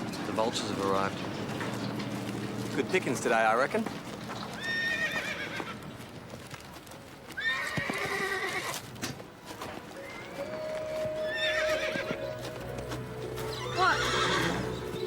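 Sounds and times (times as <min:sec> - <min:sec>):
hooves clopping: 0:00.0 - 0:15.0
horses whinnying: 0:04.5 - 0:05.8, 0:07.4 - 0:08.8, 0:10.0 - 0:12.3, 0:13.5 - 0:15.0.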